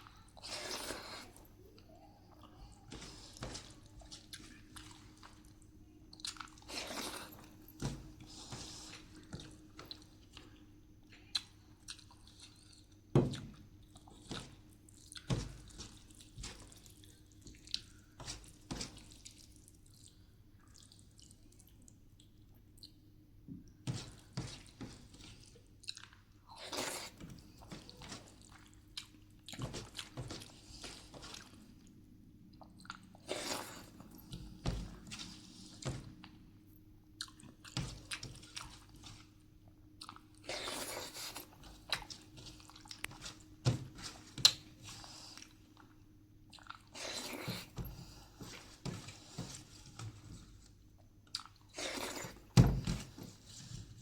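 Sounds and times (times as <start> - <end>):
wet chewing: 0.0 - 23.0, 24.0 - 36.5, 37.1 - 52.6
small clicks while eating: 9.2 - 23.0.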